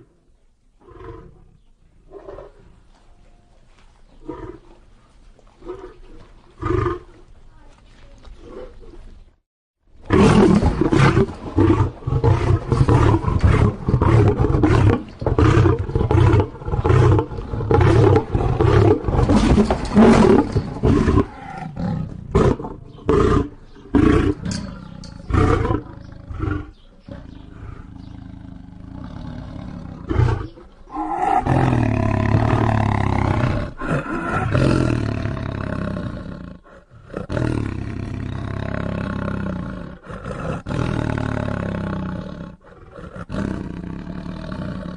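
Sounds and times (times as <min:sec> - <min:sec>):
lion roaring: 0:10.1 - 0:44.9.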